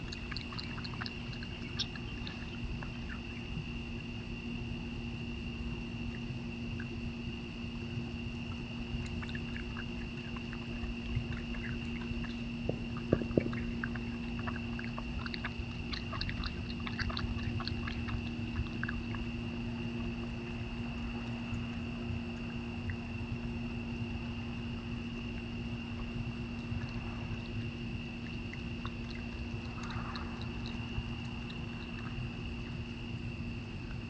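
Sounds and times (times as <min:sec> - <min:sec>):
high insect drone: 0:00.0 - 0:34.0
low hum: 0:00.0 - 0:34.0
sharp knocks: 0:12.7 - 0:13.6.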